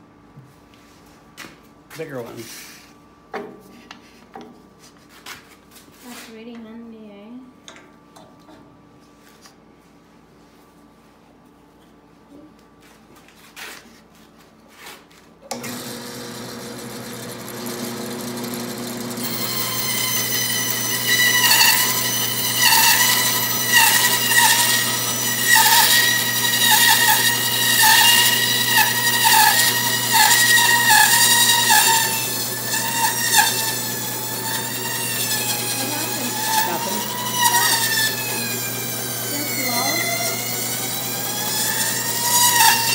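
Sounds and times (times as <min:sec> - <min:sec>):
bandsaw motor humming: 0:15.5 - 0:42.9
bandsaw blade cutting wood: 0:18.4 - 0:42.9.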